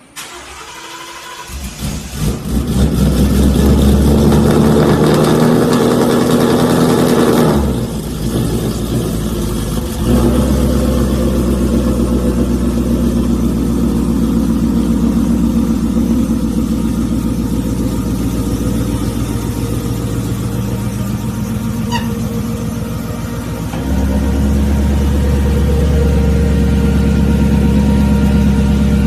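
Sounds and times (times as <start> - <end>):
car engine revving: 0.2 - 29.0
car engine deep idle: 7.8 - 29.0.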